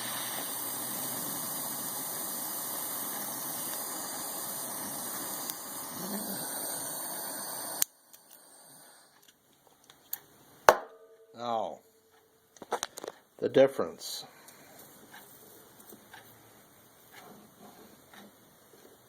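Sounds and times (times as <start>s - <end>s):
torch flame hissing: 0.0s - 9.2s.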